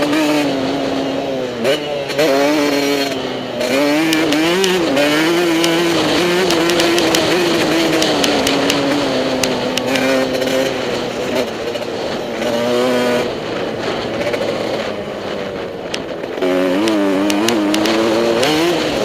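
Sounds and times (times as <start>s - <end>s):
motorbike engine revving: 0.0s - 19.0s
sharp clicks: 5.6s - 10.5s, 15.8s - 18.1s.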